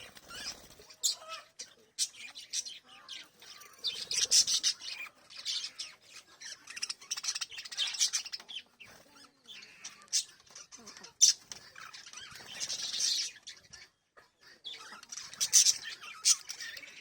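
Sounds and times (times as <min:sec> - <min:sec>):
parrots chirping and squawking: 0:00.0 - 0:17.0.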